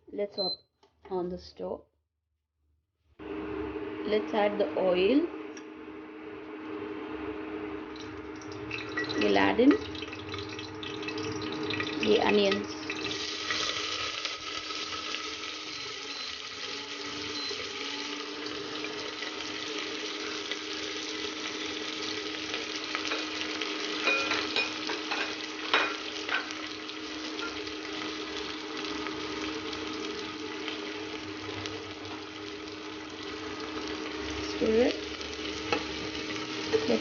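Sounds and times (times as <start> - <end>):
onions sizzling in oil: 7.9 - 37.0
utensil clinking on pan: 24.0 - 26.6.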